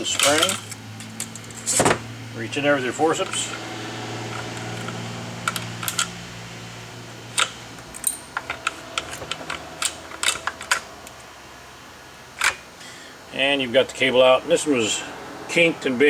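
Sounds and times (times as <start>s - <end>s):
metal forceps clicking on plastic: 0.0s - 2.0s, 7.4s - 11.3s
low steady hum: 0.0s - 16.0s.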